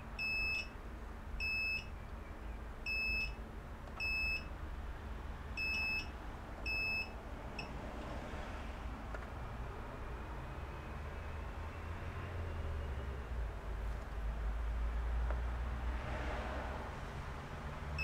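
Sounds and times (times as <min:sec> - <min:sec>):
multimeter continuity beeps: 0:00.2 - 0:00.8, 0:01.4 - 0:01.9, 0:02.9 - 0:03.4, 0:04.0 - 0:04.5, 0:05.6 - 0:07.7.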